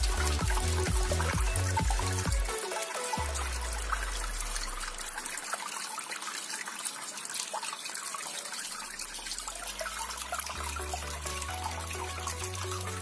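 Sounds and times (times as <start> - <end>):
background music: 0.0 - 5.3, 10.2 - 13.0
water fountain trickling: 0.0 - 13.0.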